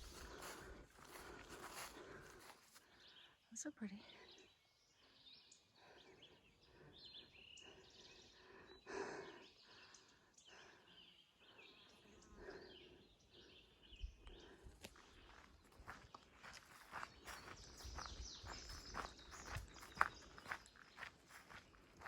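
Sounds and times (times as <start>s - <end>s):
distant birds chirping: 0.0s - 22.0s.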